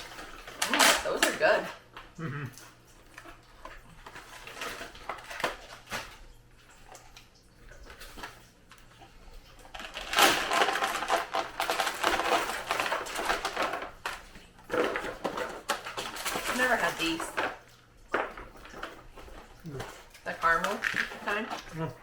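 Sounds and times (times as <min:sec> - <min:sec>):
packaging rustling and clattering: 0:00.0 - 0:01.7, 0:03.1 - 0:06.3, 0:09.6 - 0:22.0.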